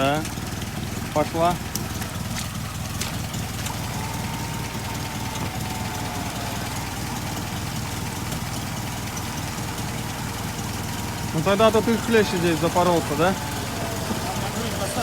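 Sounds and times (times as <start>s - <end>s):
engine idling: 0.0s - 15.0s
electric winch motor whine: 3.2s - 15.0s.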